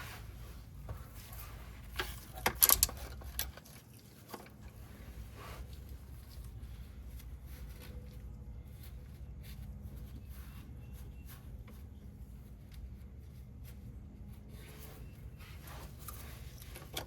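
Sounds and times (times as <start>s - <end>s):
faint rustling: 0.0s - 17.0s
low steady hum: 0.0s - 17.0s.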